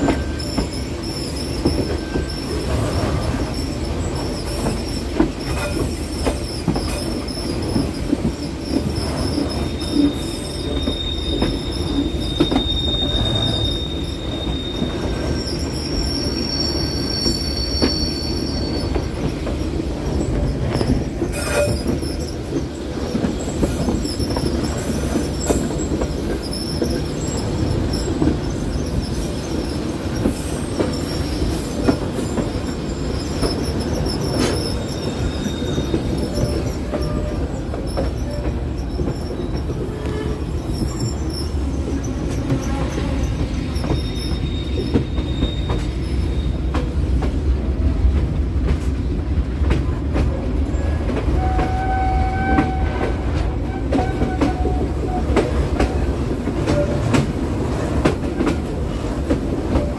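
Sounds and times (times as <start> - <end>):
wheel flanges squealing: 0.0 - 46.8
train wheels rumbling on rails: 0.0 - 59.9.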